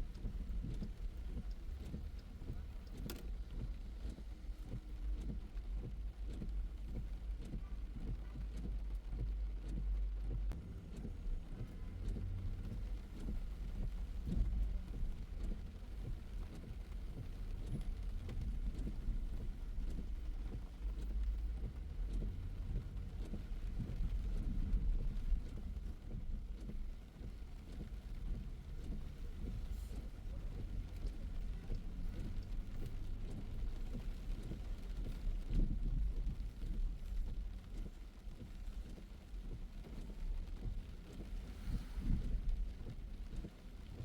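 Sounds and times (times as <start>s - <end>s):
car road and engine rumble: 0.0s - 44.0s
rain falling: 0.0s - 44.0s.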